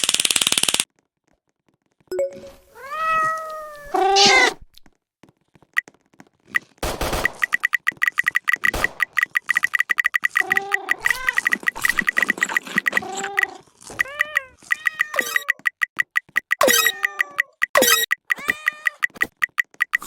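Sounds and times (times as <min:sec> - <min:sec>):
high-pitched clicks or chirps: 0:02.1 - 0:02.7, 0:07.1 - 0:20.0
cats meowing: 0:02.7 - 0:04.6, 0:10.4 - 0:11.9, 0:12.5 - 0:15.5, 0:16.9 - 0:17.6, 0:18.3 - 0:19.0.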